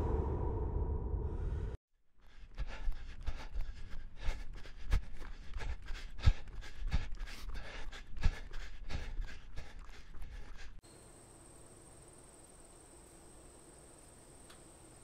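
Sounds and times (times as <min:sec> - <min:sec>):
person panting while running: 0:02.3 - 0:10.8.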